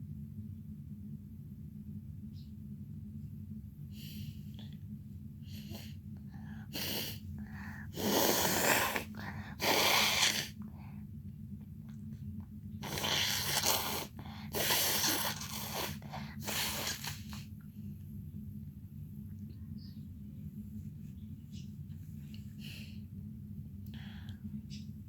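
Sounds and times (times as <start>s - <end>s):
forceful nasal breaths and snorts: 6.6s - 10.6s, 12.8s - 17.4s.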